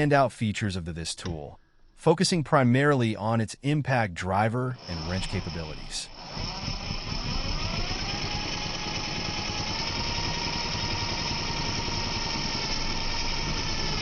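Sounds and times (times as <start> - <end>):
cordless impact driver motor: 4.8 - 14.0.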